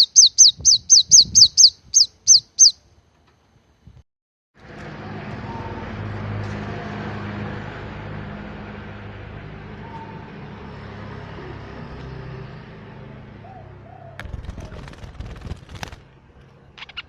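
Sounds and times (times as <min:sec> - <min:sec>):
road noise: 0:04.6 - 0:17.0
vehicle engine hum: 0:04.6 - 0:17.0.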